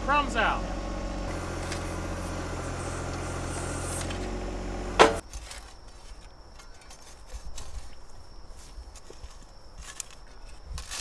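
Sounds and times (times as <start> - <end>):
tractor diesel engine running: 0.0 - 5.2
sharp clunk: 4.9 - 5.2
faint ticks and scrapes: 5.3 - 11.0.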